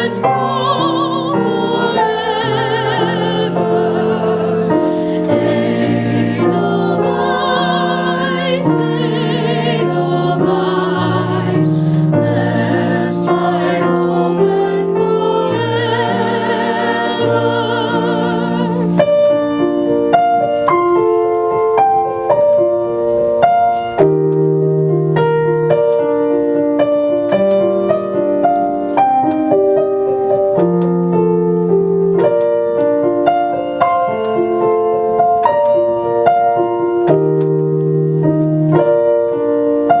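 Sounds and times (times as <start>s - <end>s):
slow piano playing: 0.0s - 40.0s.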